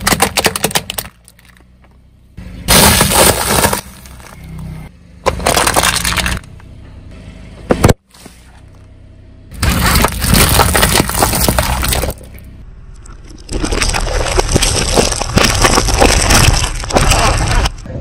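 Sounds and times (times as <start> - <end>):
brittle objects crushed under tyres: 0.0 - 1.9, 2.7 - 6.5, 9.5 - 12.4, 13.0 - 17.9.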